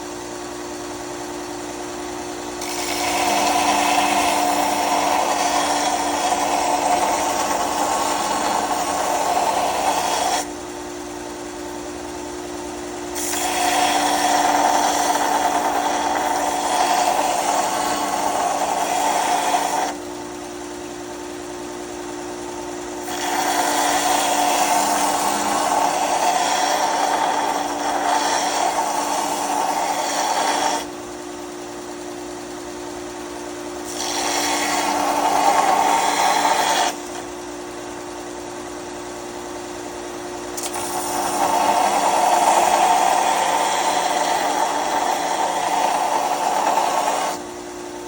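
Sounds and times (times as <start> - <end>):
sanding machine motor hum: 0.0 - 48.0
rasping grinding: 2.6 - 10.6, 13.1 - 20.0, 23.0 - 30.9, 33.8 - 37.3, 40.6 - 47.5.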